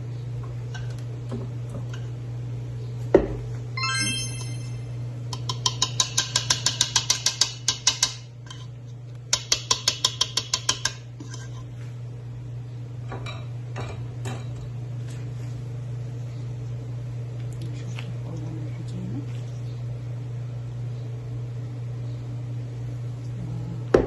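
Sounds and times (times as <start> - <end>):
steady low hum: 10.7 - 24.0.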